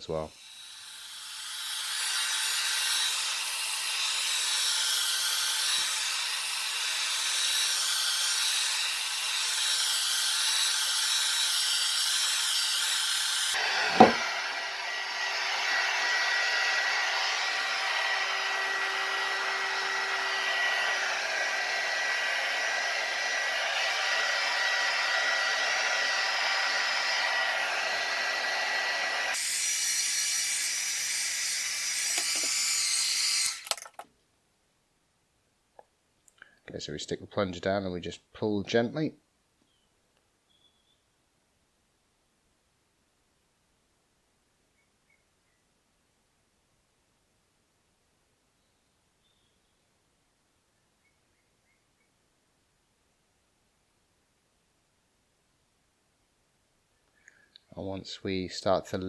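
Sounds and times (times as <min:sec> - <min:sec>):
hot air gun blowing: 0:00.1 - 0:33.9
sharp knock: 0:13.7 - 0:14.3.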